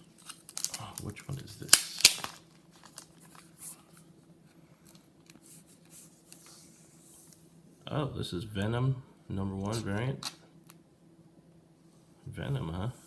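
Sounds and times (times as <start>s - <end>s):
comic book rustling: 0.0s - 4.1s
low steady hum: 0.0s - 13.0s.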